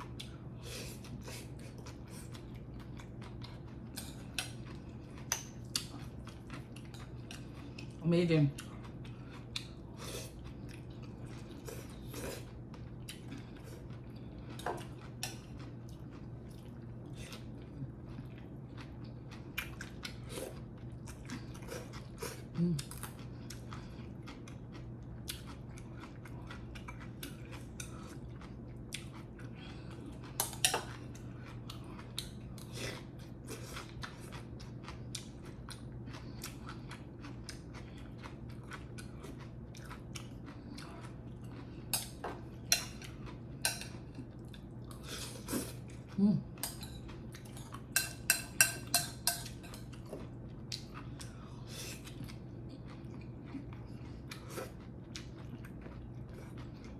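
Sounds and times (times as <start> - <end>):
chewing and eating: 0.0 - 56.9
steady low hum: 0.0 - 56.9.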